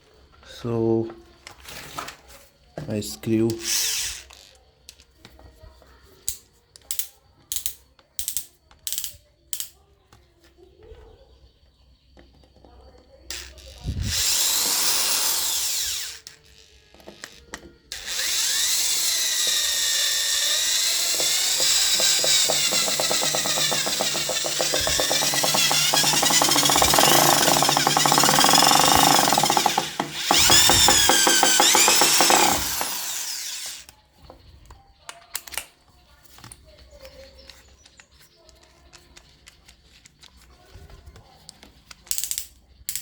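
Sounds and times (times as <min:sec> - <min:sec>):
electric screwdriver motor whine: 0:03.6 - 0:04.4, 0:13.3 - 0:33.8.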